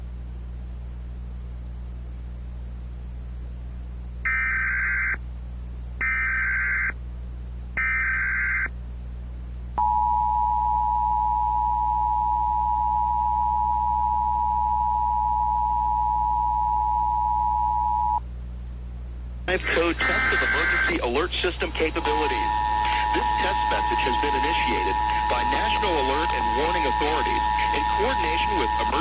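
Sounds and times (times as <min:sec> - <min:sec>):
low steady hum: 0:00.0 - 0:29.0
digital data bursts: 0:19.6 - 0:29.0.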